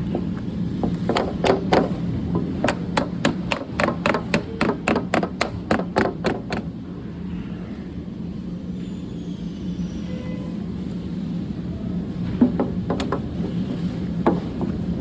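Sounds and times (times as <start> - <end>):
sharp tapping on window frame: 0.8 - 6.7.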